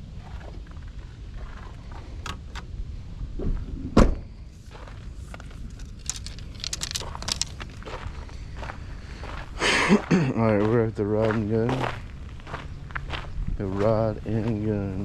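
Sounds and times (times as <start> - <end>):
low steady rumble: 0.0 - 15.0
keys clicking and jangling: 5.4 - 8.0.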